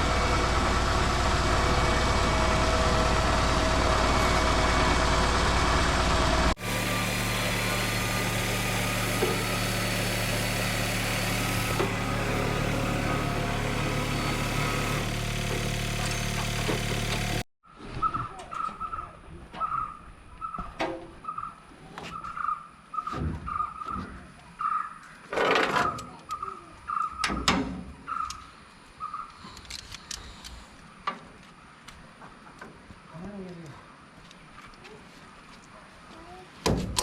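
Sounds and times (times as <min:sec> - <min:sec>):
vehicle engine idling: 0:00.0 - 0:17.5.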